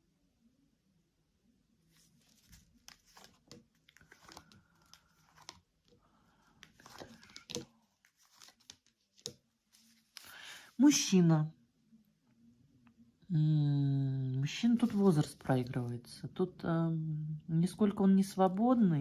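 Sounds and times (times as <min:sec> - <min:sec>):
cards rustling and clicking: 0:02.0 - 0:10.4.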